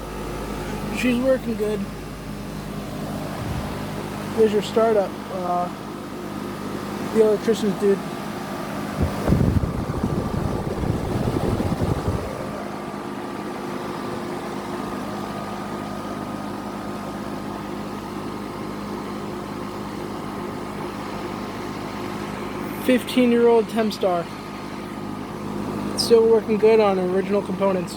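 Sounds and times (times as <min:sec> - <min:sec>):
air conditioner unit humming: 0:00.0 - 0:27.9
low rumble: 0:09.0 - 0:12.6.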